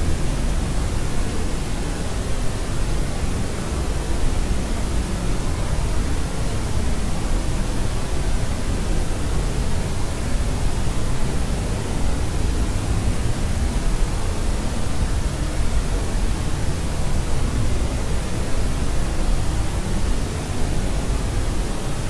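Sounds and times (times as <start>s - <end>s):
steady pink noise hiss: 0.0s - 22.0s.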